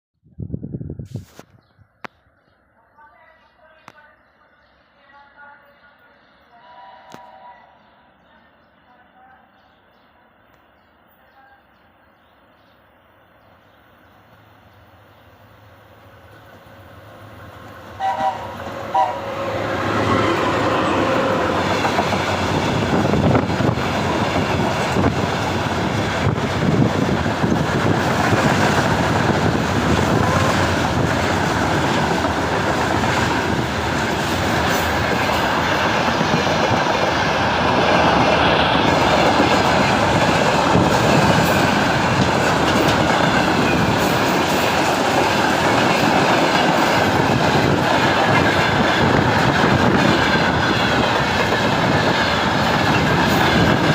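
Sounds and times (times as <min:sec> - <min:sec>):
freight train rumbling: 0:13.8 - 0:53.9
wheels clacking over rail joints: 0:38.9 - 0:53.9.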